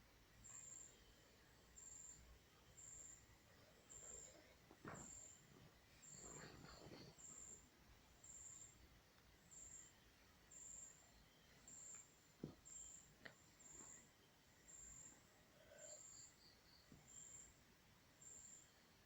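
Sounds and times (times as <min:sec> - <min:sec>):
insect chirping: 0:00.4 - 0:04.4, 0:09.5 - 0:17.6
soft knocks: 0:04.7 - 0:07.2.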